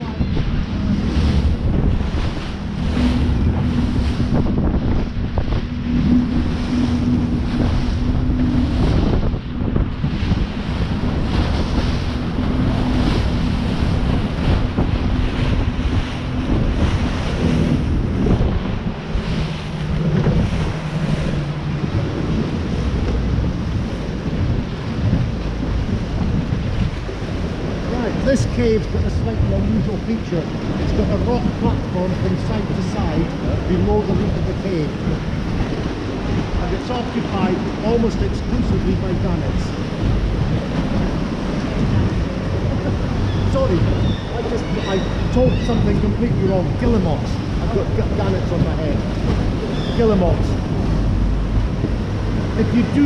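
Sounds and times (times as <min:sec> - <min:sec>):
boat engine hum: 0:00.0 - 0:53.0
sea rushing: 0:00.0 - 0:53.0
wind buffeting microphone: 0:00.0 - 0:53.0.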